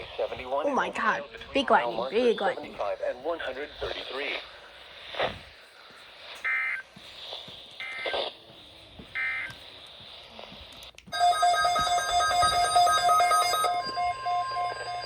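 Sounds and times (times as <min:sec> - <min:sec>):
pulsing electronic alert tones: 0:11.2 - 0:15.0.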